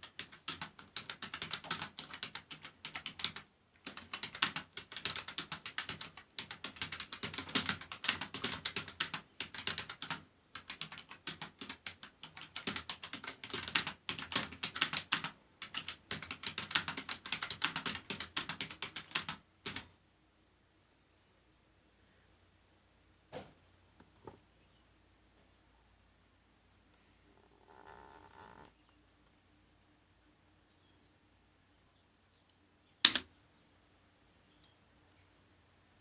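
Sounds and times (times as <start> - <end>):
fast computer keyboard typing: 0.0 - 19.9, 33.0 - 33.3.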